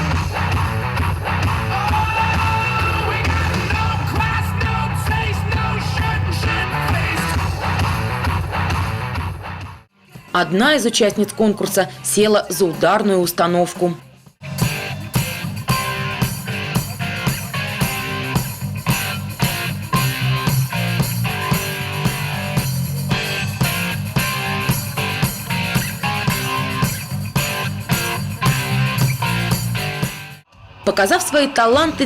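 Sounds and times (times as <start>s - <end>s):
live rock band playing: 0.0s - 9.8s, 14.4s - 30.4s
drums driving beat: 0.0s - 9.9s, 14.4s - 30.4s.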